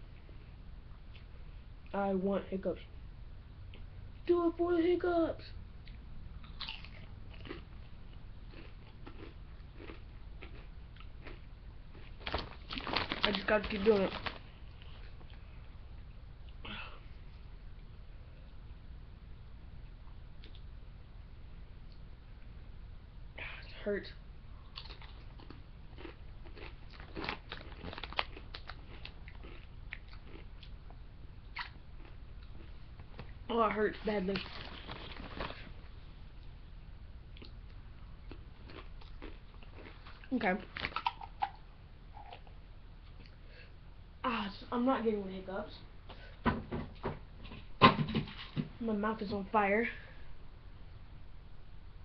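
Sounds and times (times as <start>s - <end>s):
person chewing crunchy chips: 5.9s - 15.4s, 24.6s - 33.3s, 34.2s - 35.8s, 37.3s - 41.6s.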